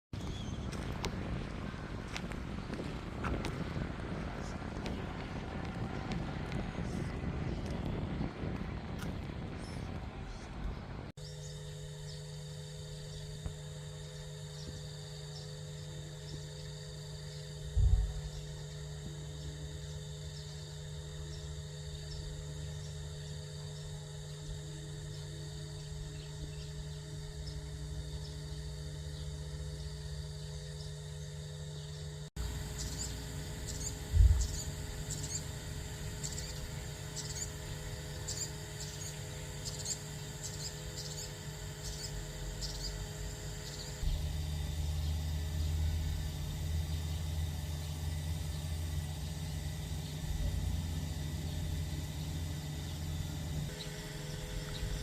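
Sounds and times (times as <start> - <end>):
dull low thumps: 0.2 - 11.1, 17.7 - 18.4, 32.4 - 36.4
low hum: 0.2 - 55.0
insects trilling: 11.2 - 55.0.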